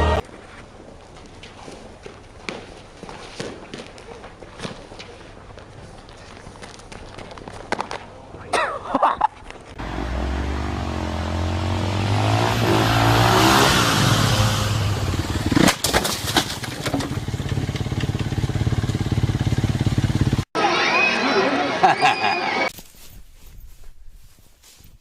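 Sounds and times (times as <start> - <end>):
engine revving: 0.0 - 0.2, 9.8 - 15.8.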